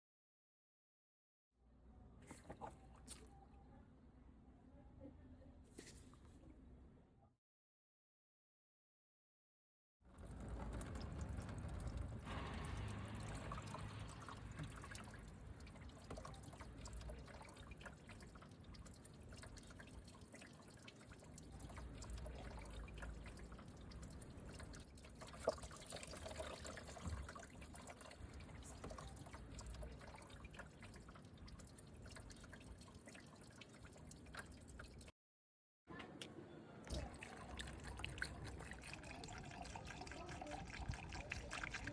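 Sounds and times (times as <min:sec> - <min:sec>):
liquid dripping and trickling: 0:10.1 - 0:35.1, 0:36.9 - 0:41.9.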